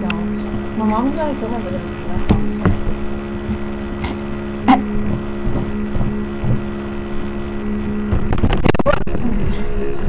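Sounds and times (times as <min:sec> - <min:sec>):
low motor hum: 0:00.0 - 0:10.0
short knocks and bumps: 0:02.1 - 0:06.8.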